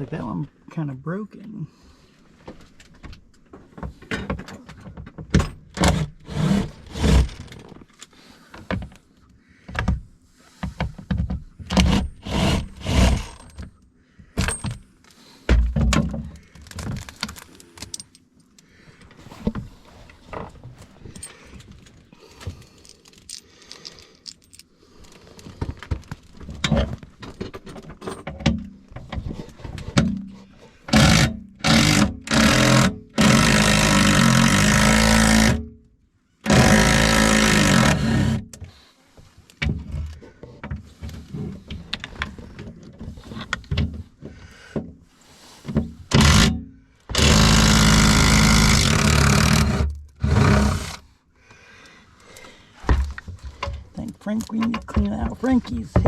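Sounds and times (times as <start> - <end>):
hardware clinking and rattling: 20.4 - 24.7.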